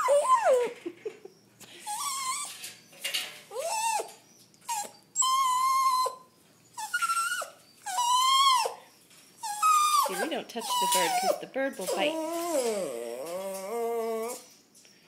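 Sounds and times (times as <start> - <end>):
dog whining: 0.0 - 2.9, 3.5 - 14.8.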